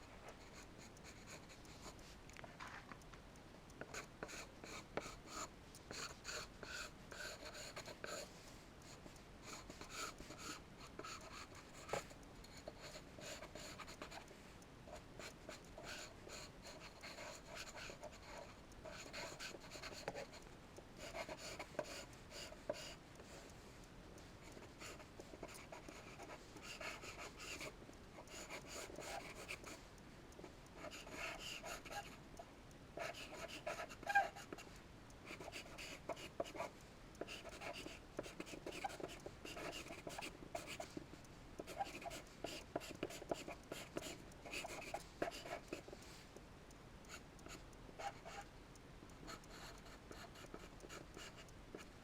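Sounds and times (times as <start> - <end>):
charcoal scratching on paper: 33.0 - 34.6.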